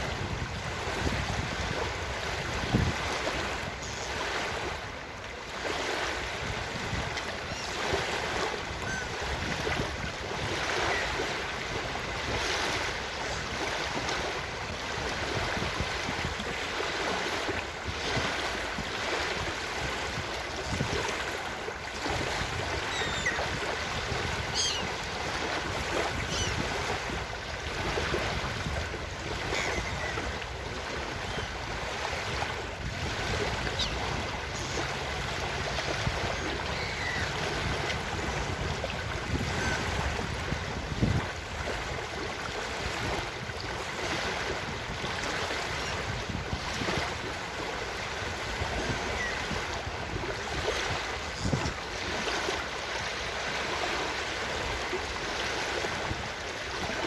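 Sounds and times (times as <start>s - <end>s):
ocean waves on beach: 0.0s - 57.0s
gull cries: 8.8s - 9.2s, 22.8s - 23.6s, 24.5s - 25.1s, 26.2s - 26.7s, 29.4s - 30.3s, 33.7s - 34.9s, 36.2s - 37.7s.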